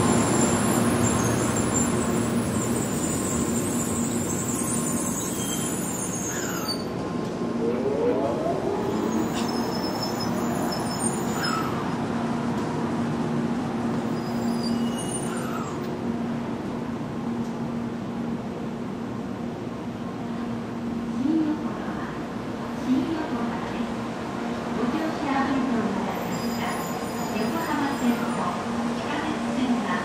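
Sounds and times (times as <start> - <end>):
train rumble and hiss: 0.0 - 30.0
rising motor whines: 7.6 - 9.9.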